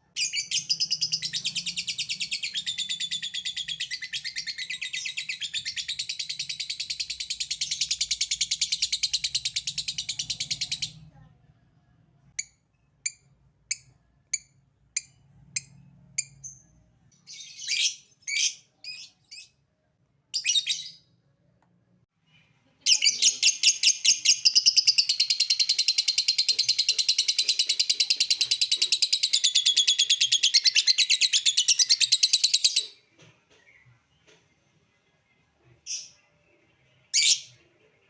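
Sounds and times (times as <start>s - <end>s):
lovebird chirping and trilling: 0.2s - 11.0s, 12.4s - 19.5s, 20.3s - 21.1s, 22.9s - 33.0s.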